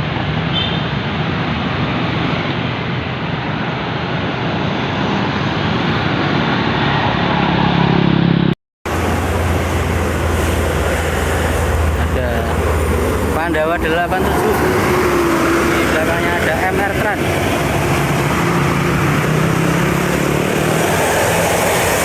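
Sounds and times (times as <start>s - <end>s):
heavy engine low drone: 1.4s - 22.0s
bus engine running: 7.5s - 22.0s.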